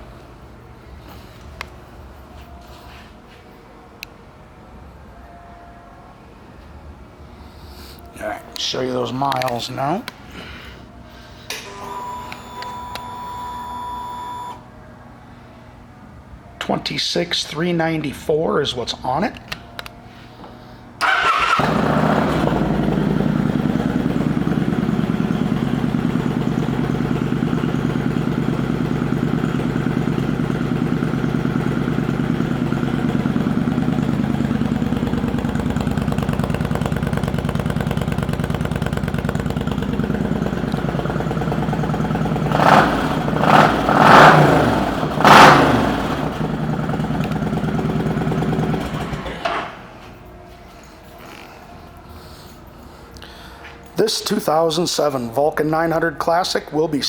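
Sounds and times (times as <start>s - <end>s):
motorcycle engine idling and revving: 21.0s - 49.4s.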